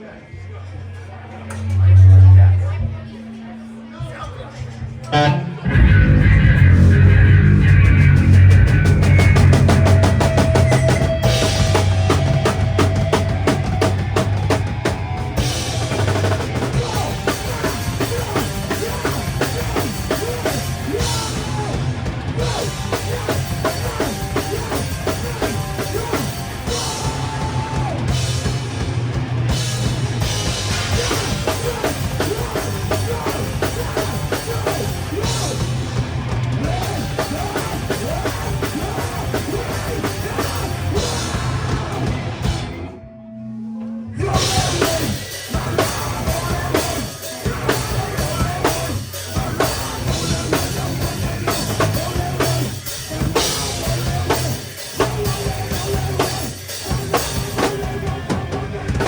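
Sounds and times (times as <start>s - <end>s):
heavy rock band playing live: 1.5s - 3.5s, 5.1s - 43.0s, 44.1s - 59.0s.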